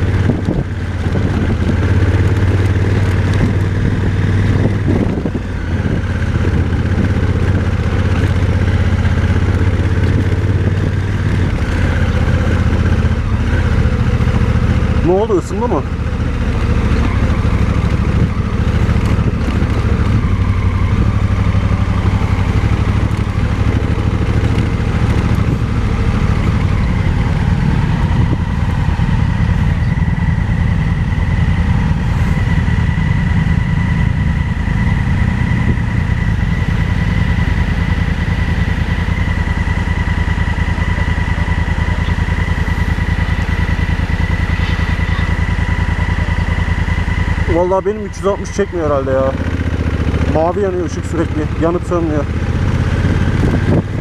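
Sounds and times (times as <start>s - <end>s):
motorcycle engine running: 0.0s - 54.0s
high-pitched whine: 41.3s - 49.2s.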